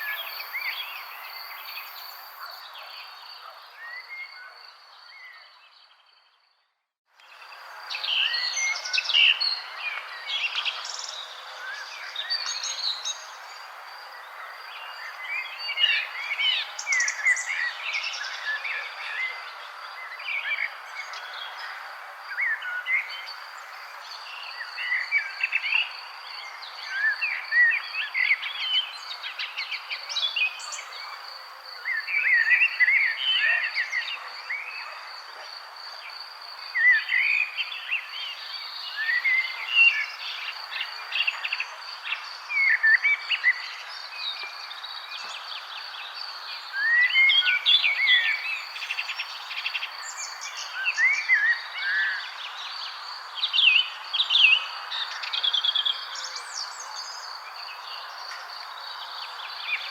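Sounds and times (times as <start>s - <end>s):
insect trill: 0.0s - 2.6s
songbirds chirping: 0.0s - 35.0s, 36.0s - 59.9s.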